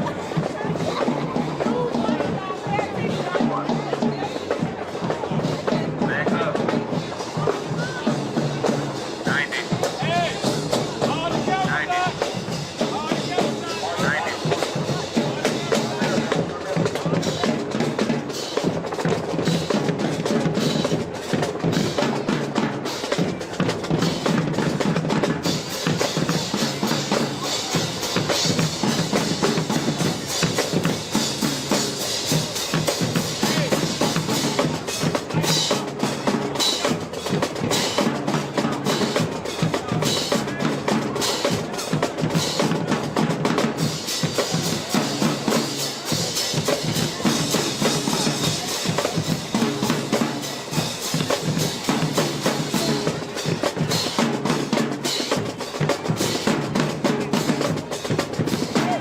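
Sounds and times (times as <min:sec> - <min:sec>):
marching band playing: 0:00.0 - 0:59.0
snare and bass drums: 0:00.0 - 0:59.0.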